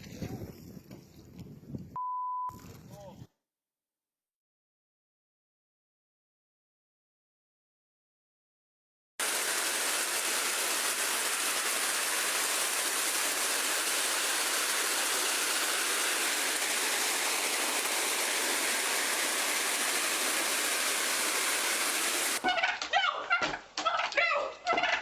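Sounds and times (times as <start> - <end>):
falling water hiss: 9.2 - 22.4.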